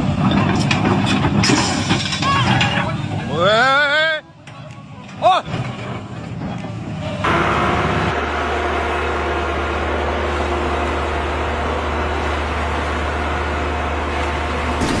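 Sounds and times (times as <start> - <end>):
excavator engine droning: 7.2 - 15.0.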